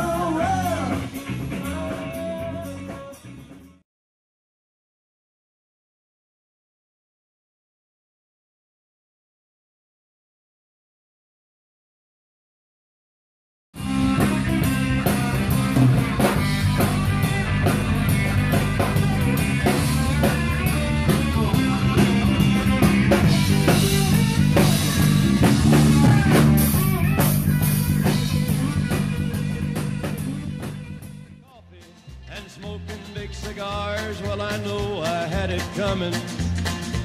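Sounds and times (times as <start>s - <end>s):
instrumental rock music: 0.0s - 3.8s, 13.8s - 37.0s.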